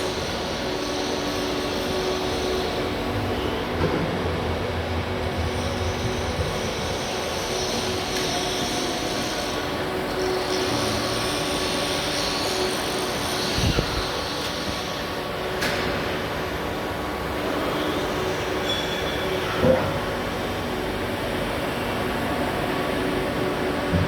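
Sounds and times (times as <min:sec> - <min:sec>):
grinding machine running: 0:00.0 - 0:24.0.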